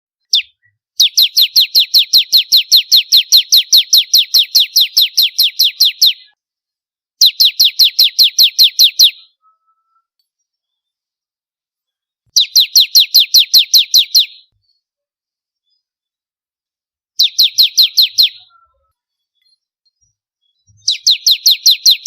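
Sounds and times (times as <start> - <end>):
bird singing fast trill: 0.2 - 6.4, 7.2 - 10.1, 12.4 - 14.6, 17.2 - 19.5, 20.5 - 22.0.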